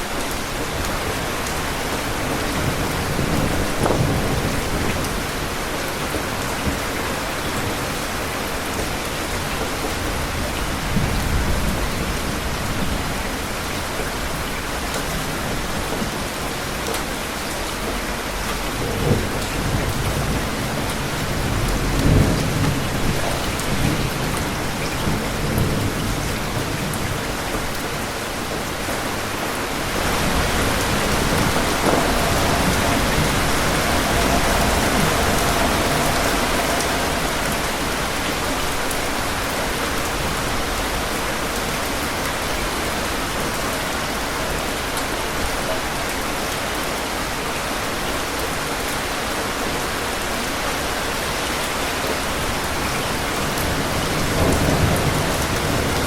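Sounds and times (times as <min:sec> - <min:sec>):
heavy rain falling: 0:00.0 - 0:56.0
low thunder rumbling: 0:00.7 - 0:07.9, 0:17.8 - 0:43.6, 0:52.4 - 0:56.0.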